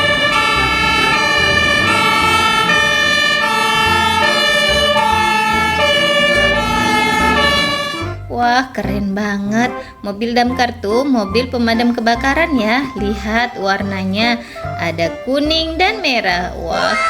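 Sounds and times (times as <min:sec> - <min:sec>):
fire engine siren: 0:00.0 - 0:08.2.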